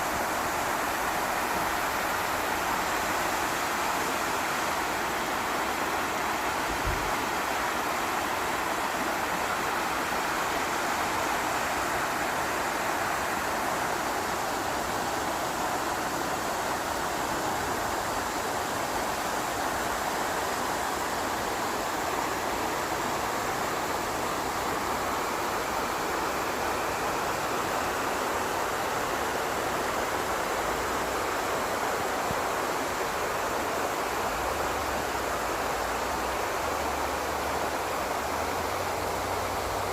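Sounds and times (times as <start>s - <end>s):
waterfall roaring: 0.0s - 39.9s.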